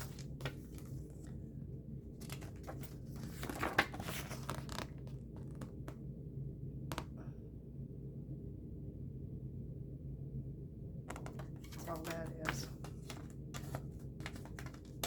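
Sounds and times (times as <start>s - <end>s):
crinkly rustling: 0.0s - 1.4s, 2.1s - 5.8s, 11.1s - 15.0s
low steady hum: 0.0s - 15.0s.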